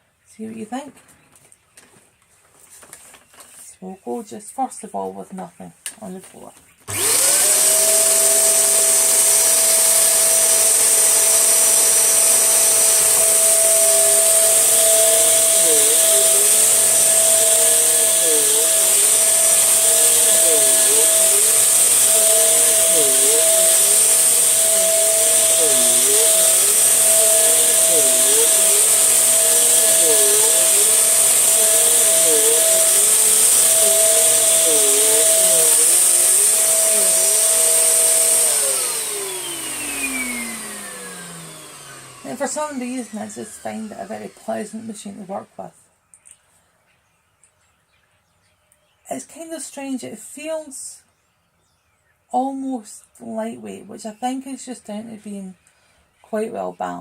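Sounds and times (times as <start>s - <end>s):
vacuum cleaner running: 6.9s - 45.4s.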